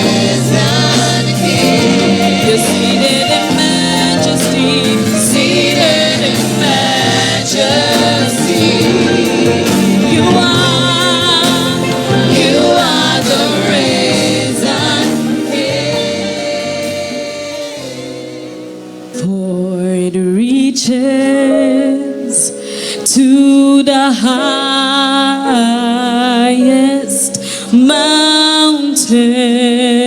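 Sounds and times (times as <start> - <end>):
gospel choir singing: 0.0 - 19.3
instrumental accompaniment: 0.0 - 19.3.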